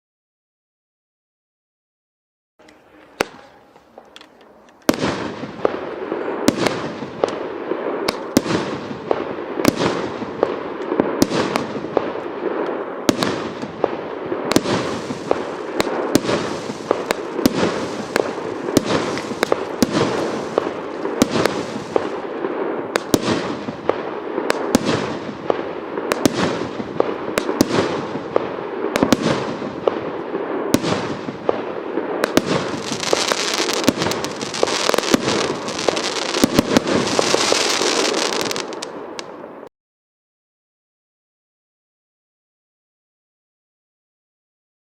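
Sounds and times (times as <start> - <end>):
firework shots banging: 4.8 - 39.4
firework crackle and fizz: 5.0 - 39.4.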